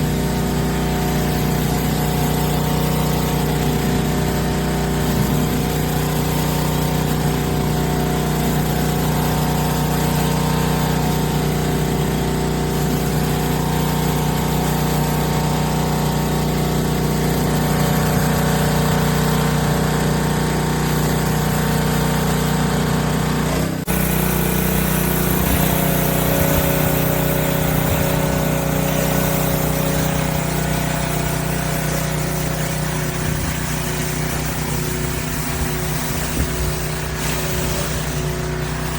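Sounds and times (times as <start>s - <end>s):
pressure washer engine running: 0.0s - 38.9s
water spray hiss: 23.9s - 38.9s.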